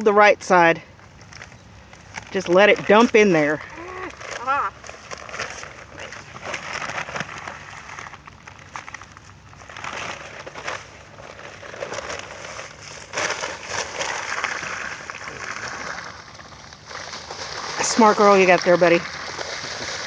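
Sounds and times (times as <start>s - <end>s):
concrete mix pouring into water: 9.6s - 20.0s.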